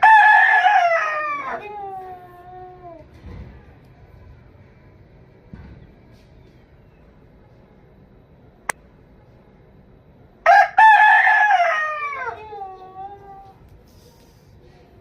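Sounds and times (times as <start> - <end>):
rooster crowing: 0.0 - 1.6, 10.5 - 12.9.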